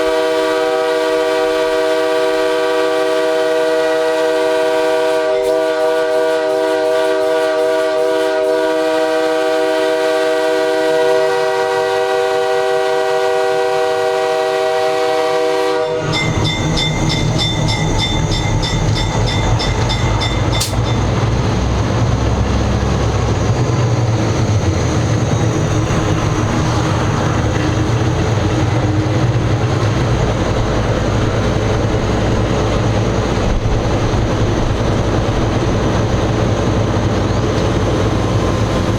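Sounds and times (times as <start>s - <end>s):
locomotive air horn chord: 0.0s - 21.2s
rapid ringing: 16.1s - 21.3s
diesel engine rumble: 16.3s - 38.9s.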